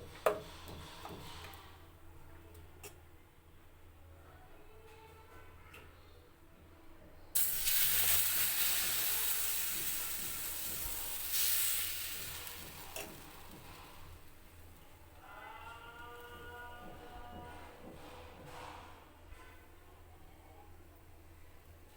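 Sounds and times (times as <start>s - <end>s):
bread sizzling in oiled pan: 7.4s - 14.7s.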